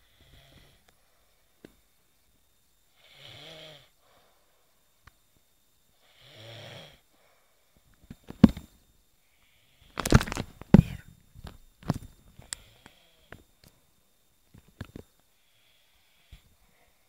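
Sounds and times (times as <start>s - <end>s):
person snoring: 3.0s - 3.9s, 6.0s - 7.0s
rustling: 10.0s - 12.4s.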